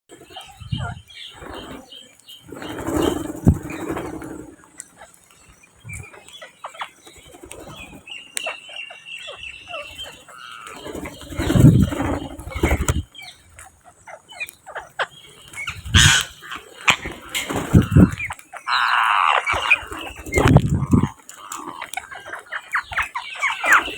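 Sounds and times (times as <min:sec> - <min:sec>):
parrots flapping wings: 0:00.2 - 0:05.1, 0:07.0 - 0:08.0, 0:09.9 - 0:13.1, 0:15.4 - 0:23.9
parrot chirps and clicks: 0:14.3 - 0:23.9
high parrot call: 0:15.7 - 0:16.6, 0:17.3 - 0:20.1.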